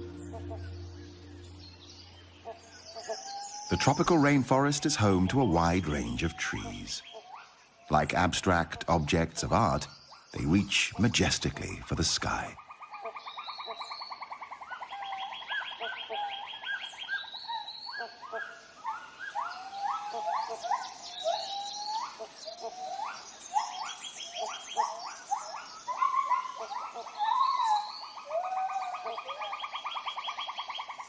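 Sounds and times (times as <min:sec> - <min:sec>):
buzzy trills: 0:00.0 - 0:02.7.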